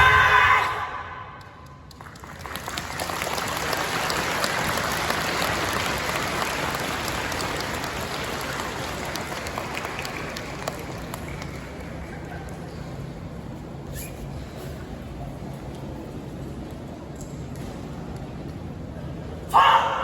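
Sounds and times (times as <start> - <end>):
audience applauding: 1.9 - 12.3.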